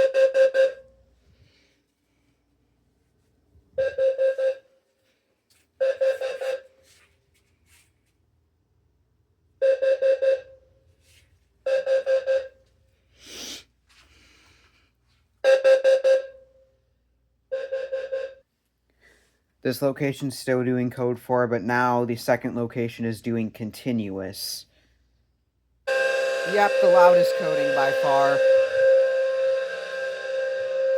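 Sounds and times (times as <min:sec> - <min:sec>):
fire alarm horns pulsing: 0:00.0 - 0:01.0, 0:03.8 - 0:04.7, 0:05.8 - 0:06.8, 0:09.6 - 0:10.6, 0:11.6 - 0:12.7, 0:15.4 - 0:16.4, 0:17.5 - 0:18.4, 0:25.8 - 0:30.9.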